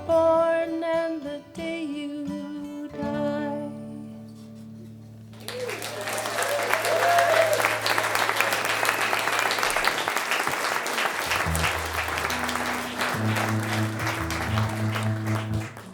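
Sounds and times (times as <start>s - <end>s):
audience applauding: 5.3s - 15.9s
low held instrument notes: 11.3s - 15.9s.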